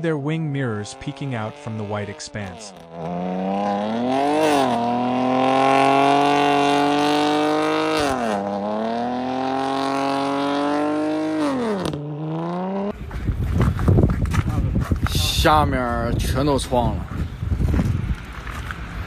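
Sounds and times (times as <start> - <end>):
car engine revving hard: 0.8 - 12.9.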